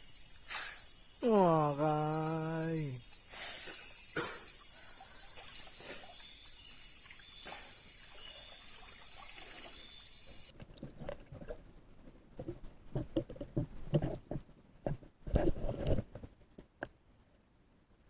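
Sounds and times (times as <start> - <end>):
crickets trilling: 0.0 - 10.5.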